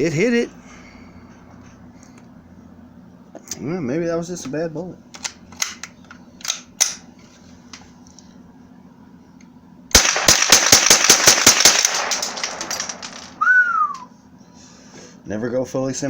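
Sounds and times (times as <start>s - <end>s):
rapid gunshots: 10.0s - 13.0s.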